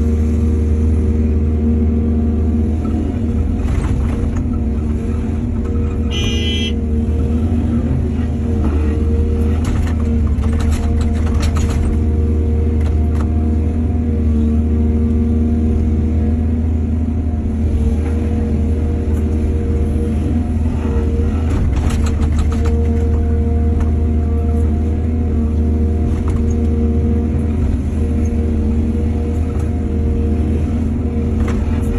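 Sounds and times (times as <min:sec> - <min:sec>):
excavator diesel engine: 0:00.0 - 0:31.9
brief high tone: 0:06.1 - 0:06.8
clatter and scraping: 0:08.6 - 0:12.1, 0:21.4 - 0:23.9.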